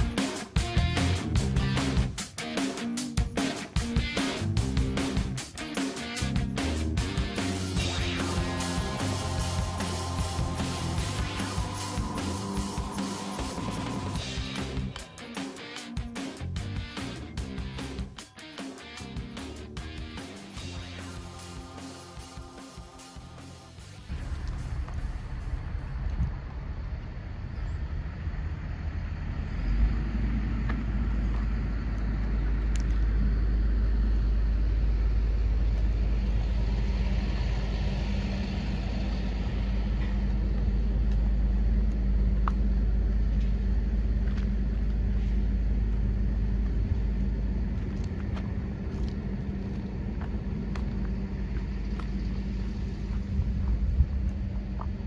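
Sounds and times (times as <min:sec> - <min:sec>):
engine idling: 0:00.0 - 0:18.2, 0:18.8 - 0:55.0.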